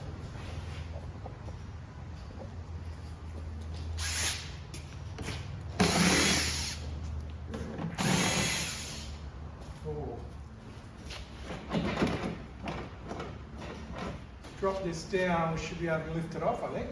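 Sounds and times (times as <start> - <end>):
power drill spinning: 8.0 - 9.1.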